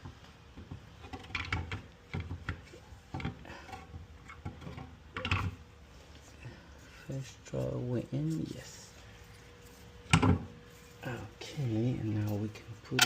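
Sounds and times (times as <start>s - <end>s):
parts knocking and clicking: 0.0s - 5.6s, 10.0s - 10.5s.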